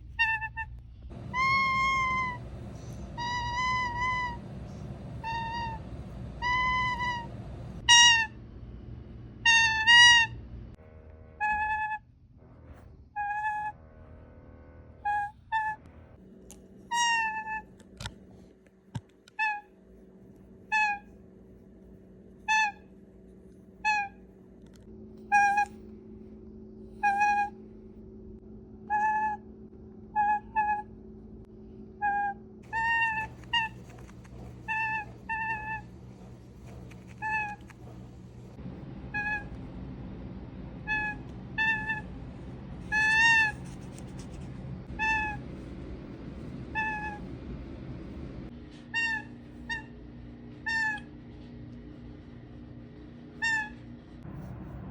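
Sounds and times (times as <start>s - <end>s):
toucan honking: 9.5s - 12.0s, 32.0s - 38.6s.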